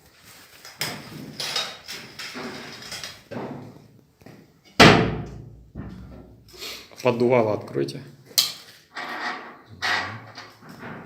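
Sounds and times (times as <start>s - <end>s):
loud clunk: 4.8s - 6.5s
metal fireplace doors knocking: 4.8s - 6.5s.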